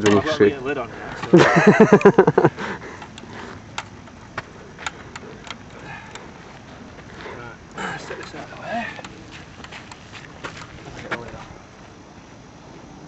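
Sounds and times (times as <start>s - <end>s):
faint background noise: 0.0s - 13.0s
sharp irregular clicks: 1.2s - 6.3s.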